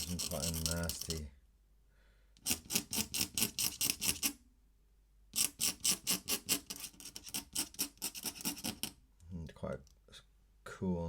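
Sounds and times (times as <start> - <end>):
pen scratching on paper: 0.0 - 1.2, 2.4 - 4.4, 5.4 - 8.9.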